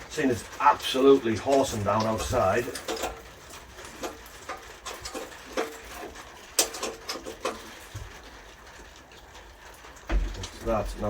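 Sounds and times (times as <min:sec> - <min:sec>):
spanner clinking on metal: 0:01.5 - 0:07.7.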